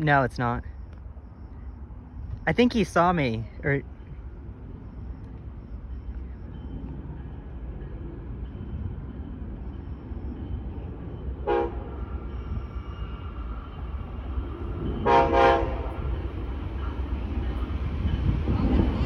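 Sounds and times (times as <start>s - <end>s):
locomotive horn toots: 11.4s - 12.2s, 14.9s - 16.2s.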